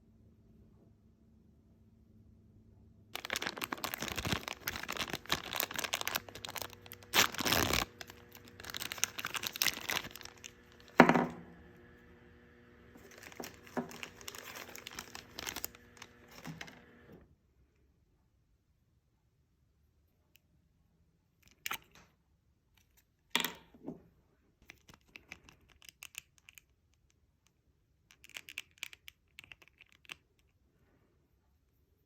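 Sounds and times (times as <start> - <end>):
plastic packaging crinkling and tearing: 3.2 - 11.0, 13.0 - 16.9.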